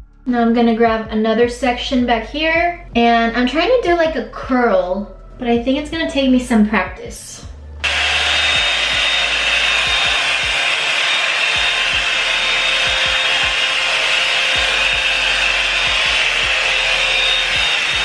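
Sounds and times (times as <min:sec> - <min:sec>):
hair dryer brush blowing: 0:07.8 - 0:18.0.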